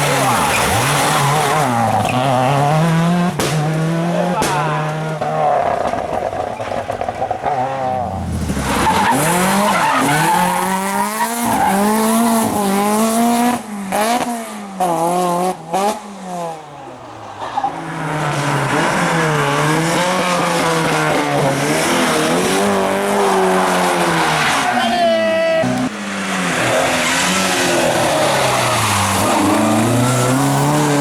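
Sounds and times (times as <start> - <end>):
rally car engine revving: 0.0 - 17.0, 17.6 - 31.0.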